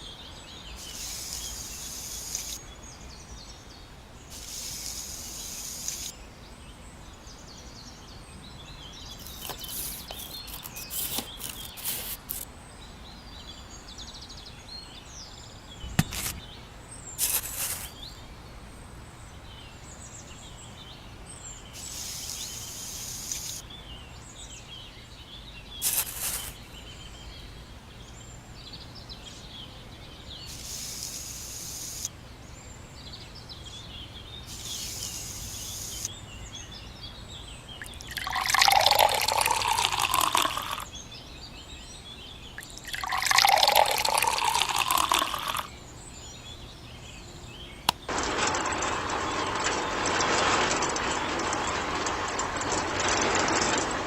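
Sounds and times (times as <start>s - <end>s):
small birds chirping: 0.0s - 18.5s, 19.2s - 54.0s
short hissing rushes: 0.8s - 2.6s, 4.3s - 6.1s, 9.2s - 12.4s, 17.2s - 18.0s, 21.8s - 23.6s, 25.8s - 26.7s, 30.5s - 32.1s, 34.5s - 36.1s, 48.1s - 54.0s
sharp clicks or knocks: 15.9s - 16.4s.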